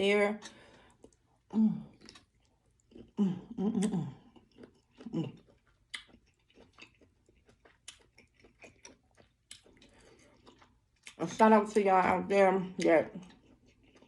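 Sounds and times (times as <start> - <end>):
person chewing with wet smacking: 0.4 - 11.8, 12.8 - 14.0.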